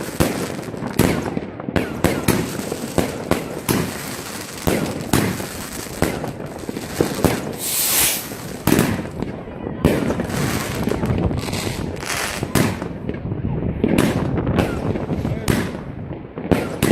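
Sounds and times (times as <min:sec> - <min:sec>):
distant crackling and popping: 0:00.0 - 0:16.9
firework bangs: 0:00.0 - 0:16.9.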